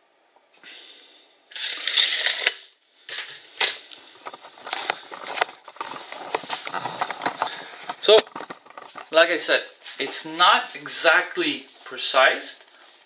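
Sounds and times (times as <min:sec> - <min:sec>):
tools clicking and crackling: 0:01.6 - 0:09.2.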